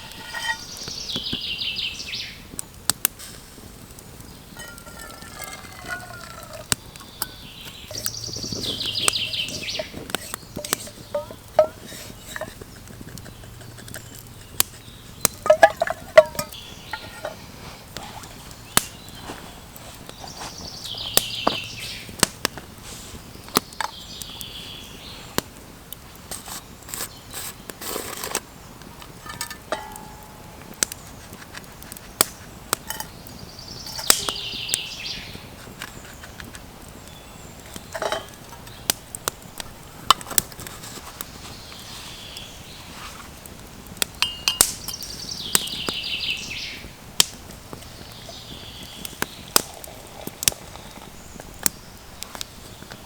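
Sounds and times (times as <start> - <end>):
wood fire crackling: 0.0 - 53.0
songbird trilling: 4.5 - 17.4, 33.0 - 35.5, 44.2 - 46.9.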